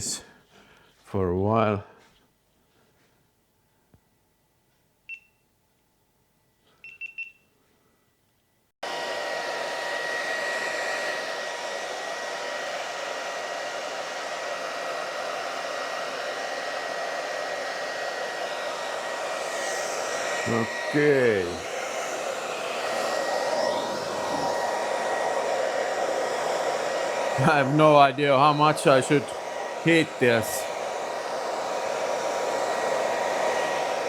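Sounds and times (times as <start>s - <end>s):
short electronic beeps: 6.8s - 7.5s
heat gun blowing hot air: 8.8s - 34.0s.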